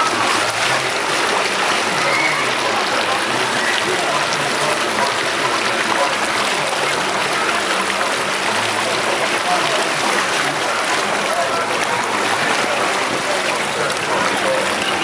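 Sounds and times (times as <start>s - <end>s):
water rushing through waterslide: 0.0s - 15.0s.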